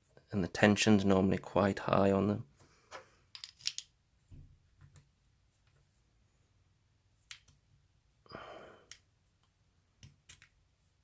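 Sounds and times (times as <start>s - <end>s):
breathy sigh: 8.2s - 9.0s.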